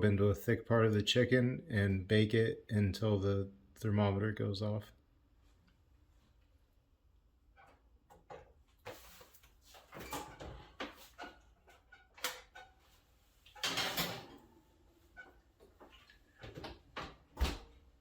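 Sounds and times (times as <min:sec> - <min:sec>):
kitchen utensils clattering: 0:09.9 - 0:12.6, 0:13.6 - 0:14.5
kitchen clicks and knocks: 0:13.6 - 0:14.5.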